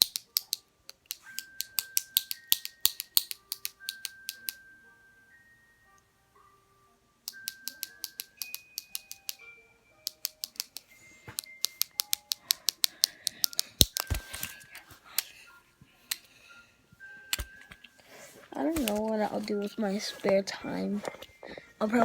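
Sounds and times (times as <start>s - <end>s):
fidget cube buttons clicking: 0.0s - 4.6s, 7.3s - 9.4s, 10.0s - 15.3s, 17.3s - 17.9s, 18.5s - 22.0s.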